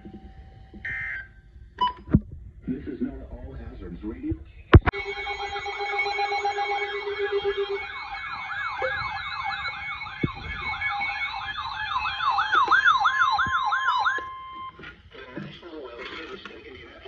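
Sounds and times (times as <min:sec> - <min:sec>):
steady alert tones: 0:04.8 - 0:14.8
yelping emergency sirens: 0:04.8 - 0:14.8.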